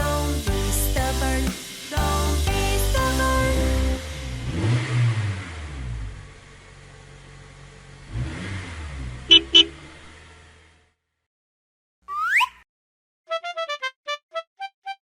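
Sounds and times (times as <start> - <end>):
children's song chord: 0.0 - 4.8
cartoon engine sweeping past: 3.2 - 6.2
horn honks: 9.3 - 9.8.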